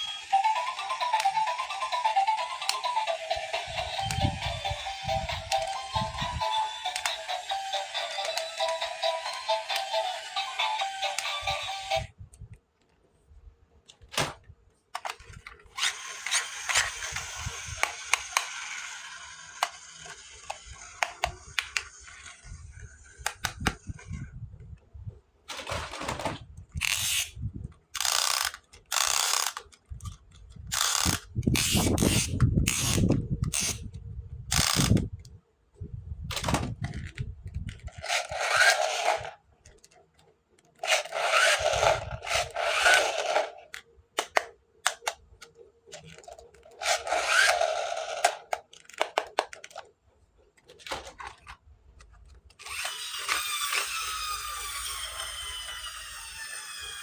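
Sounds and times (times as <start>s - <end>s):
plastic toy parts clicking: 0.0s - 13.0s, 13.8s - 24.8s, 25.5s - 35.4s, 36.2s - 57.0s.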